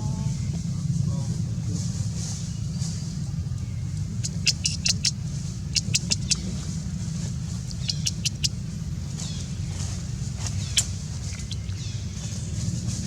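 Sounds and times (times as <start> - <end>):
steady low rumble: 0.0 - 13.0
baby monkey squeaking: 4.1 - 6.6, 7.7 - 8.6, 10.6 - 12.0.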